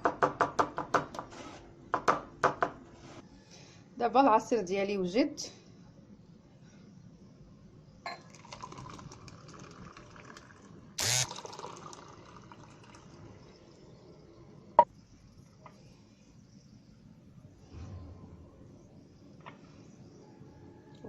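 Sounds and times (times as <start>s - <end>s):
glass clink: 8.1s - 8.4s
liquid pouring into a glass: 8.1s - 14.2s.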